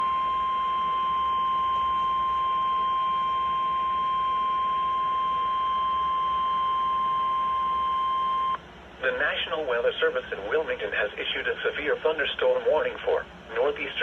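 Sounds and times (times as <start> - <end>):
steady alarm tone: 0.0 - 8.6.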